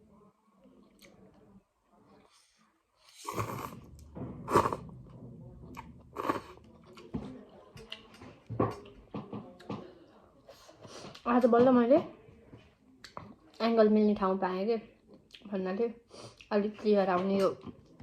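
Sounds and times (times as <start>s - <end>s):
slurping and chewing noodle soup: 3.0s - 4.9s, 5.7s - 7.1s.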